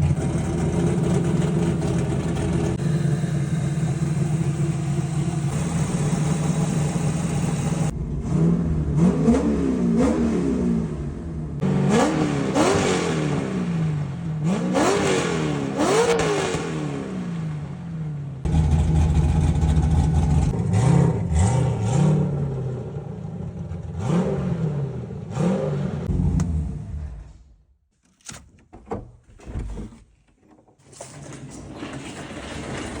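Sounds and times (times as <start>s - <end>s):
race car engine revving: 5.5s - 17.7s, 18.4s - 27.6s.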